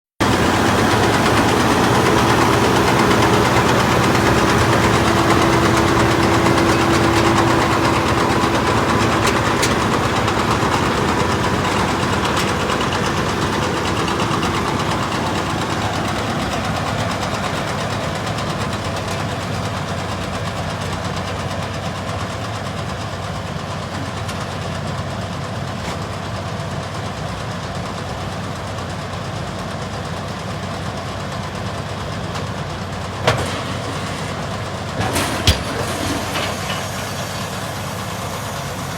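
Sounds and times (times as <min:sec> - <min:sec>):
baler machinery running: 0:00.2 - 0:22.0, 0:32.4 - 0:38.9
tractor engine running: 0:00.2 - 0:38.9.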